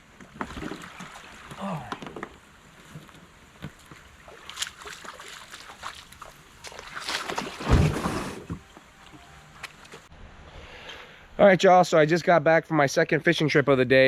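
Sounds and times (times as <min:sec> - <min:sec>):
paddle dipping in water: 0:00.0 - 0:08.7
water sloshing against hull: 0:00.2 - 0:08.7.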